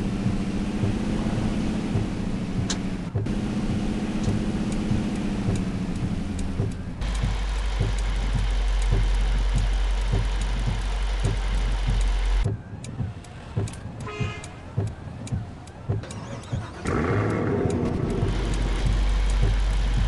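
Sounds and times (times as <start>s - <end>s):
low vehicle rumble: 0.0s - 20.0s
scattered clicks: 4.2s - 20.0s
car horn toot: 14.0s - 14.6s.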